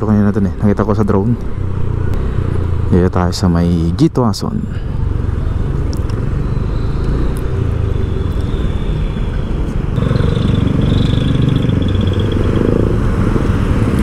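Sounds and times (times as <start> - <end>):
road noise: 0.0 - 14.0
vehicle engine running: 9.9 - 14.0.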